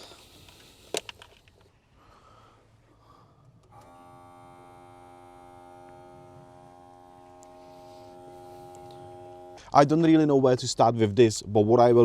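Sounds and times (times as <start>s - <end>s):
electric air pump humming: 3.7s - 9.8s.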